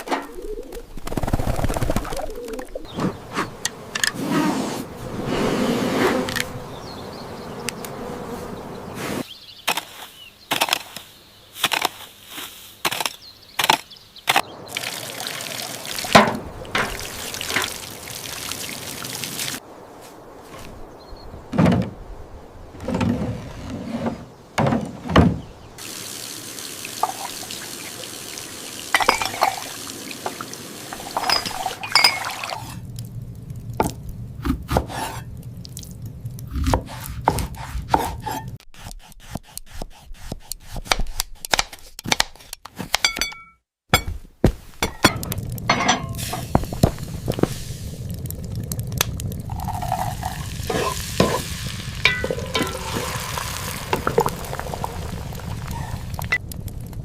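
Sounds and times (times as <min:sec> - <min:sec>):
water pouring and splashing: 0:14.4 - 0:20.7, 0:25.8 - 0:36.6, 0:44.9 - 0:57.0.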